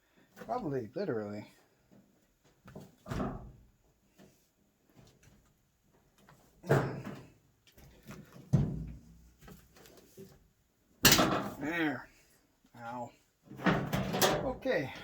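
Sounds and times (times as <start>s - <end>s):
sheet metal clunks and knocks: 8.5s - 9.1s, 11.1s - 11.6s, 13.6s - 14.6s.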